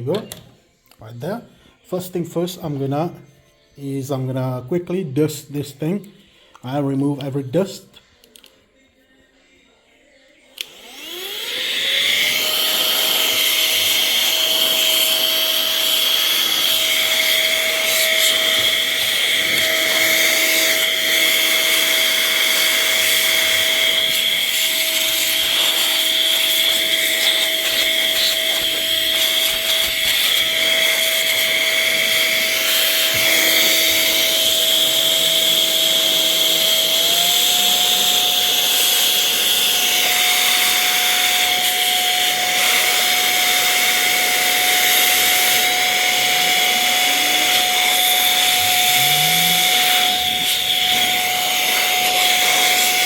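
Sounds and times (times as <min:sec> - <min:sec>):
electric duster motor whining: 0:10.6 - 0:53.0.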